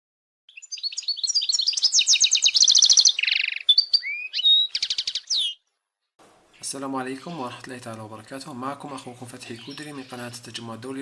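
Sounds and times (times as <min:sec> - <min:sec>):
goldfinch twittering song: 0:00.5 - 0:05.7, 0:08.3 - 0:11.0.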